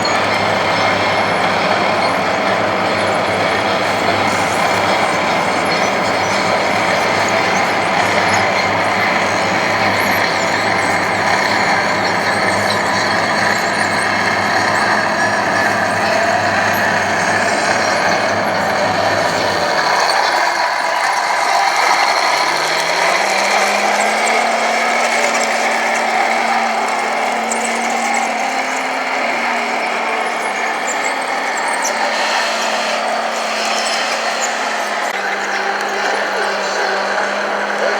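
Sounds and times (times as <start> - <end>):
model machine motors whirring: 0.0 - 37.9
motor whine rising in pitch: 0.0 - 37.9.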